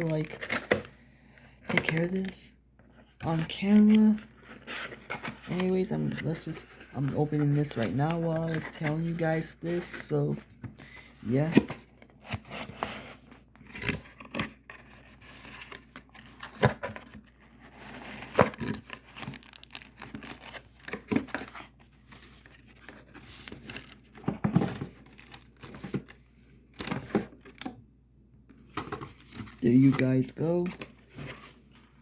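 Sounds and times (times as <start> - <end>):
packaging tearing and crinkling: 12.4 - 26.2.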